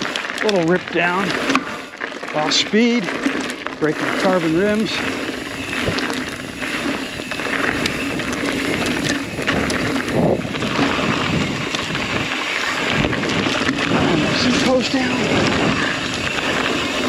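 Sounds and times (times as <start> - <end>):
bike rattling over bumps: 0.0 - 17.0
bike tyres rolling over rock: 0.0 - 17.0
wind on microphone: 5.4 - 17.0.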